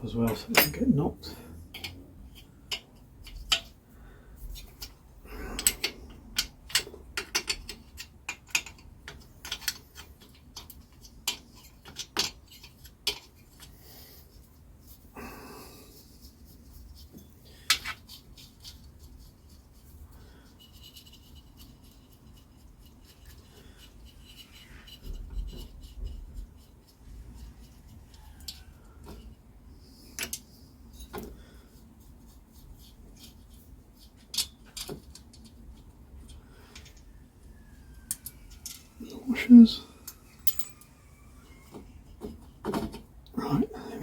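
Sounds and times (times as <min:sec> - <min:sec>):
spanners and engine parts clinking: 0:00.2 - 0:01.0, 0:40.0 - 0:41.0.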